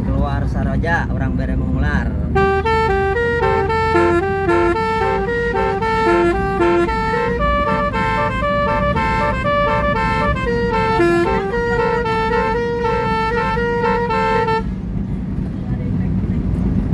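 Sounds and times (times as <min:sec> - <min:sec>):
road and engine noise: 0:00.0 - 0:16.9
musical vehicle horn melody: 0:02.3 - 0:14.8.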